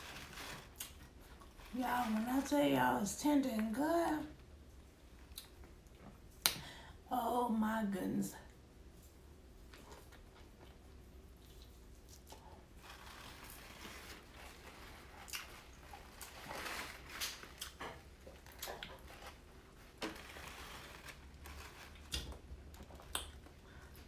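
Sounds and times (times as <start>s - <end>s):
person chewing food: 17.2s - 19.4s
mouth clicks and smacks: 23.0s - 23.4s.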